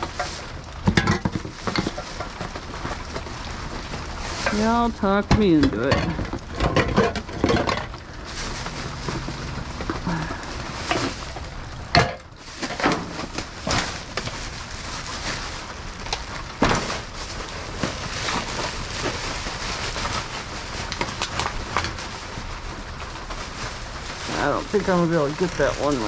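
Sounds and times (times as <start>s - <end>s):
rain hiss: 0.0s - 26.0s
trash rustling: 0.0s - 26.0s.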